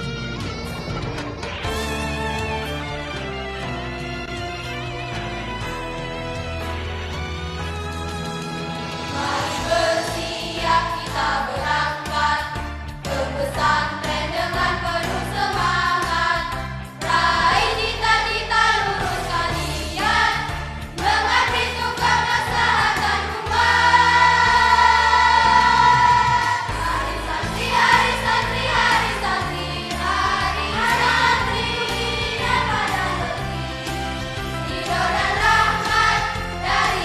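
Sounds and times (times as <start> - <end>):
choir singing: 8.9 - 37.0.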